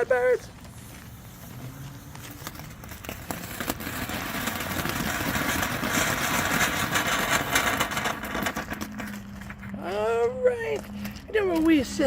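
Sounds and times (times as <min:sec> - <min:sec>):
firework hissing and crackling: 0:00.0 - 0:09.2.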